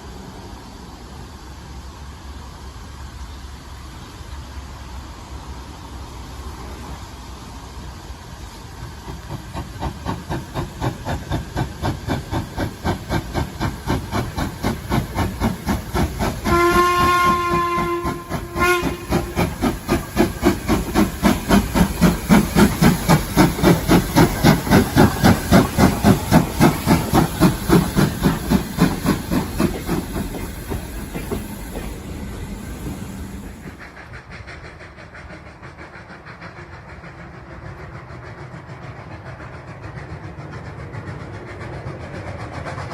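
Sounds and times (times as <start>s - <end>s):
steam locomotive chuffing: 0.0s - 42.9s
train whistle blowing: 16.4s - 19.5s.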